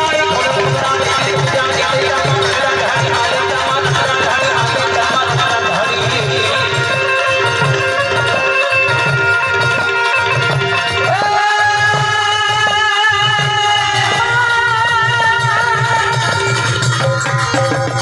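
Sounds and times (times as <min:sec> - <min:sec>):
harmonium chords: 0:00.0 - 0:18.0
steady drum beat: 0:00.0 - 0:18.0.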